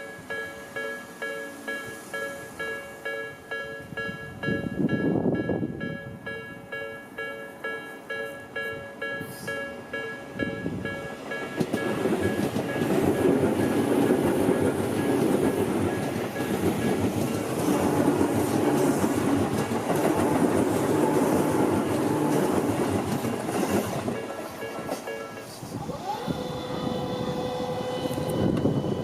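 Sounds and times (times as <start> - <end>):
level crossing warning bell: 0.0 - 25.7
train rumbling past: 0.0 - 29.0
wheels clattering over rail joints: 9.4 - 25.7.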